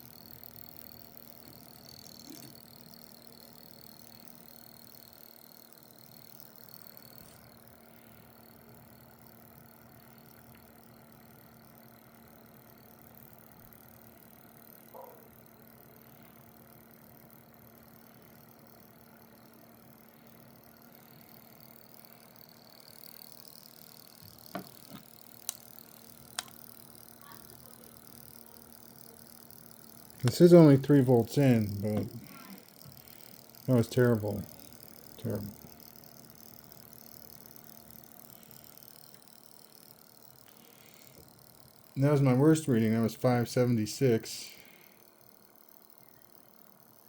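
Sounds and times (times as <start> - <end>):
motor humming: 0.0 - 47.0
sharp clicks: 22.8 - 39.8.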